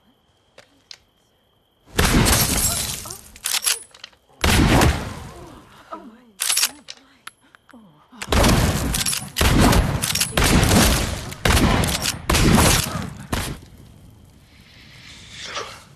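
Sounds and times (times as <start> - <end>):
gunshots with ringing tail: 8.3 - 13.6.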